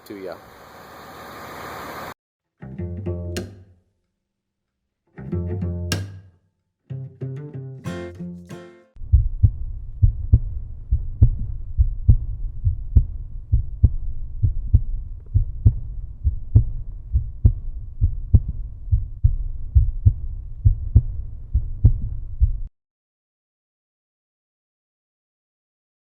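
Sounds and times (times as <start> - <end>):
deep thumping beat: 9.0 - 22.7
steady low hum: 9.0 - 22.7.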